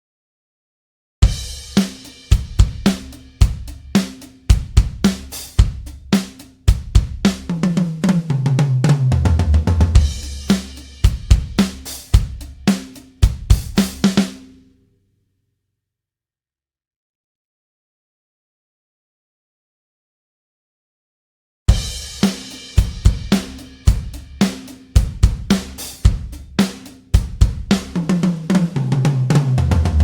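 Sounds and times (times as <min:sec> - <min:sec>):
drum kit groove: 0:01.2 - 0:14.6, 0:21.7 - 0:30.0
tom drum fill: 0:01.2 - 0:14.6, 0:21.7 - 0:30.0.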